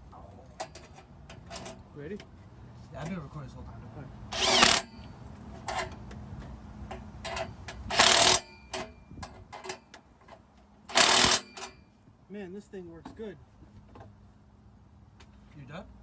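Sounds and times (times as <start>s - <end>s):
tool clicks and ticks: 4.3s - 5.0s, 7.3s - 8.9s, 10.9s - 11.8s.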